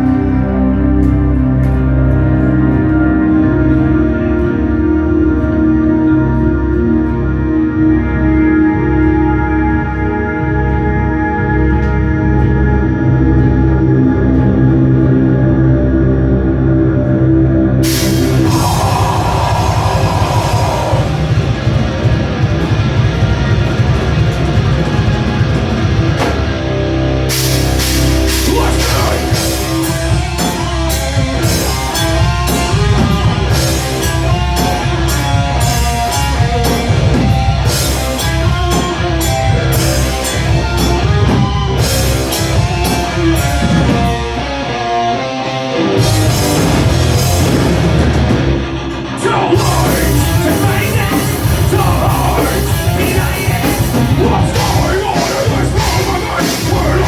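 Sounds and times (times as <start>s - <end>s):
bass guitar: 0.0s - 57.0s
distorted electric guitar: 0.0s - 57.0s
person singing: 17.8s - 21.4s, 28.3s - 30.0s, 49.2s - 57.0s
drum kit with crashing cymbals: 17.8s - 44.4s, 46.0s - 48.8s, 49.6s - 57.0s.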